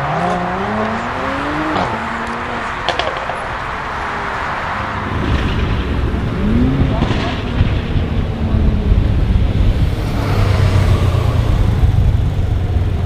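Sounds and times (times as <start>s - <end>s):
car engine accelerating: 0.0s - 13.0s
exhaust pops: 5.2s - 10.0s.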